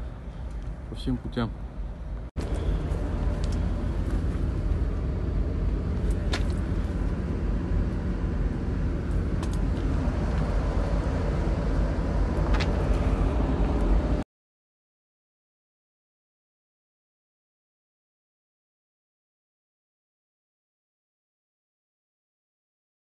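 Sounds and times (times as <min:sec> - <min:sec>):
loud low engine rumble: 0:00.0 - 0:14.2.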